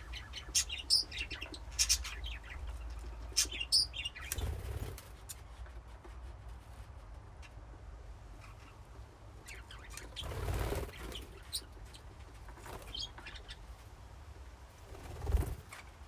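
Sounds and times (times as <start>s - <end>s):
budgies chirping: 0.0s - 4.8s, 9.4s - 13.6s
wing flapping: 4.2s - 5.4s, 10.1s - 11.6s, 14.8s - 16.0s.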